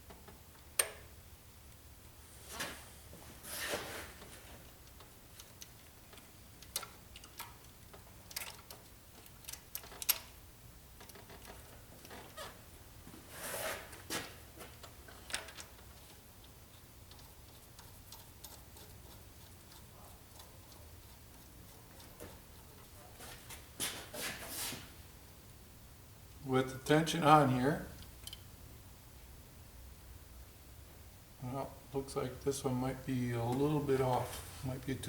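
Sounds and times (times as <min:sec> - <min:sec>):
soft scraping rustle: 0:02.2 - 0:04.7, 0:11.5 - 0:14.8, 0:20.5 - 0:25.0, 0:33.4 - 0:34.8
metal tools clicking and tapping: 0:16.4 - 0:22.9.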